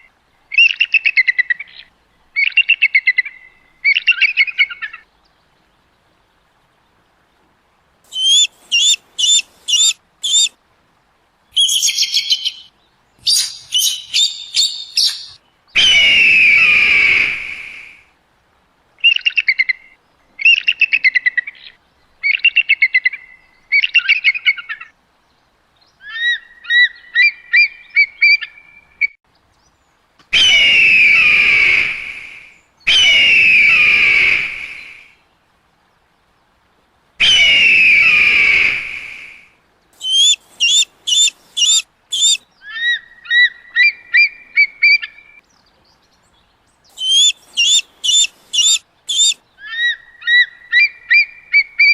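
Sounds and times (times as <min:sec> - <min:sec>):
eagle chattering calls: 0:08.1 - 0:10.5, 0:11.6 - 0:16.0, 0:40.0 - 0:42.4, 0:47.0 - 0:49.4
eagle screams: 0:08.1 - 0:10.5, 0:40.0 - 0:42.8, 0:47.0 - 0:49.4
eagle whistled notes: 0:08.1 - 0:10.5, 0:40.0 - 0:42.4, 0:47.0 - 0:49.4.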